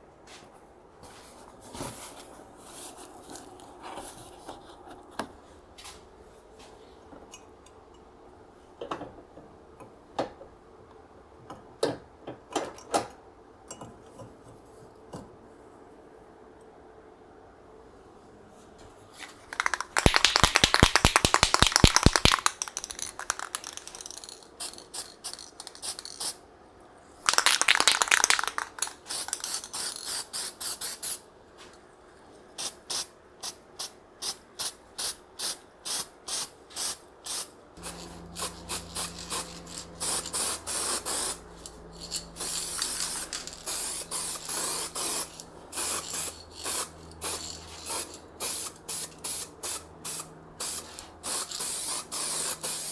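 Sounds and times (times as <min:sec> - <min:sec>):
spray-paint can hissing: 0:19.5 - 0:26.4, 0:27.3 - 0:31.2, 0:34.2 - 0:52.9.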